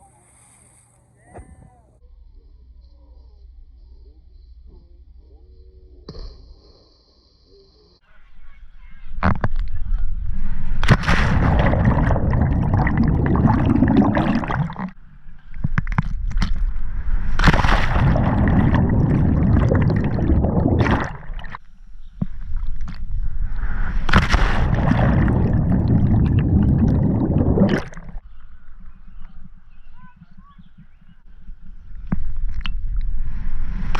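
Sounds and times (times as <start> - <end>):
rushing and gurgling underwater: 10.3 - 15.0, 15.8 - 21.6, 22.6 - 28.2
water splash: 10.7 - 15.0, 15.8 - 21.6, 22.6 - 28.2.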